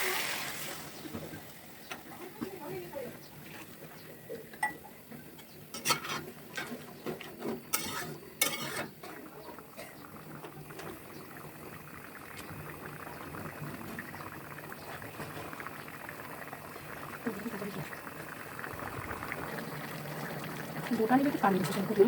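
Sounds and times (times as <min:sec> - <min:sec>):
curry bubbling: 0:00.0 - 0:22.0
metal spatula scraping a pan: 0:05.7 - 0:09.1.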